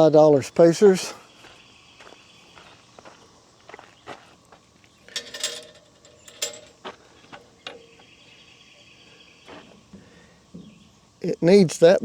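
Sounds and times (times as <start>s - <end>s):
metal clicks of tools: 5.1s - 8.0s
scraping: 5.1s - 8.1s.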